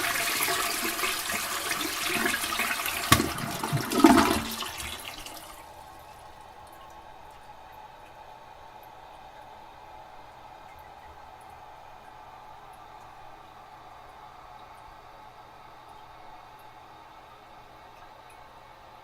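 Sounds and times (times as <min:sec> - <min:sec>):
toilet flushing: 0:00.0 - 0:07.4
water gurgling: 0:00.0 - 0:08.2.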